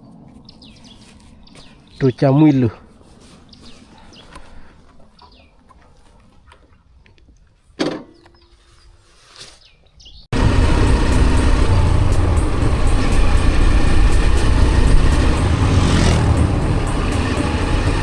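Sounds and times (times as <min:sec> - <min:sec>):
vehicle engine and wind noise: 0:10.3 - 0:18.0.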